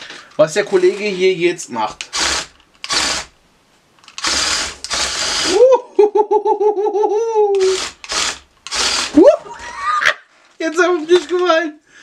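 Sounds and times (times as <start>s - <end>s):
toy tank motors whirring: 4.0s - 5.6s, 7.5s - 9.2s.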